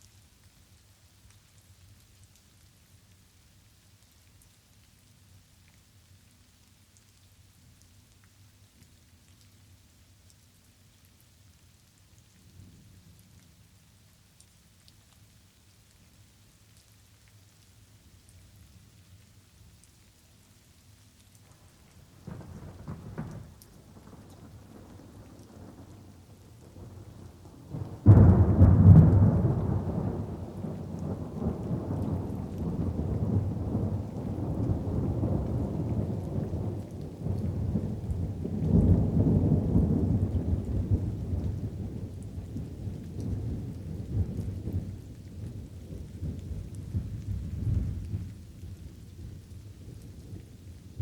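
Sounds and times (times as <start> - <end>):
light rain: 0.0 - 51.0
thunder rumbling: 22.2 - 45.0.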